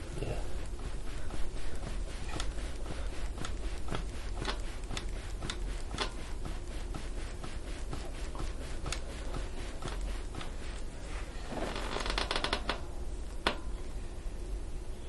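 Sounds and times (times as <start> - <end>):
hands rubbing skin and clothing: 0.0 - 12.8.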